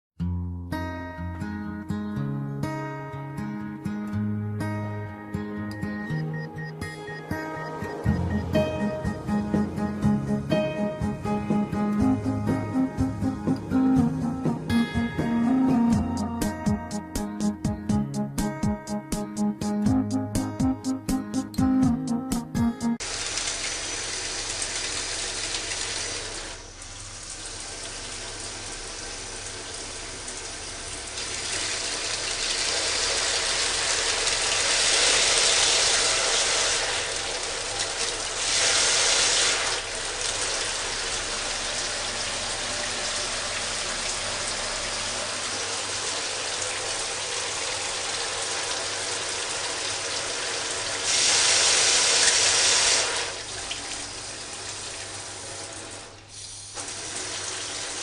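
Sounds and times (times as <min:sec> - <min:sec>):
shower water spraying: 0:23.0 - 0:58.0.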